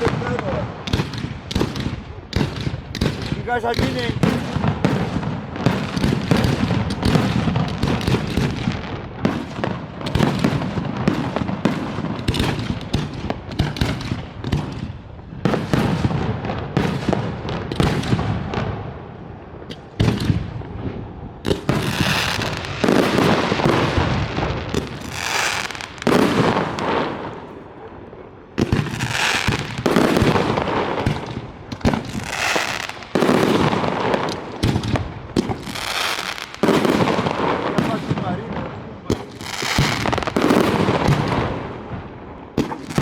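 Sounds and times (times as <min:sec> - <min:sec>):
firework bursts and bangs: 0:00.0 - 0:43.0
firework crackling hiss: 0:21.5 - 0:27.3, 0:39.2 - 0:41.4.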